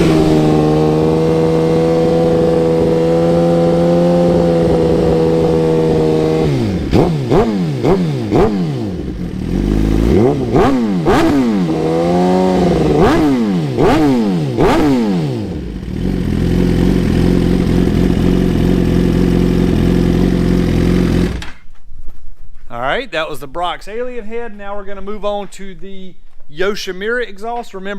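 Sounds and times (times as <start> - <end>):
motorcycle engine revving: 0.0 - 21.7.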